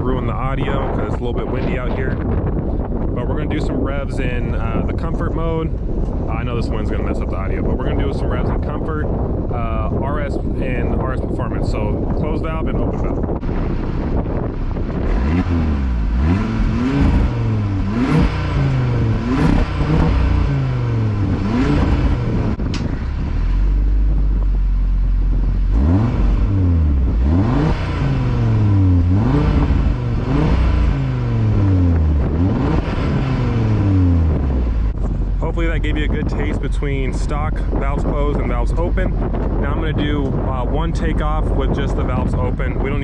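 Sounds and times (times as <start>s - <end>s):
car engine revving: 12.8s - 43.0s.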